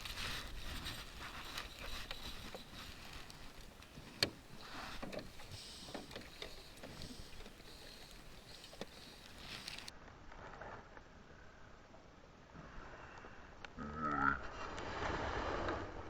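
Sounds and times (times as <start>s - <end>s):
water sloshing against boat: 0.0s - 9.9s.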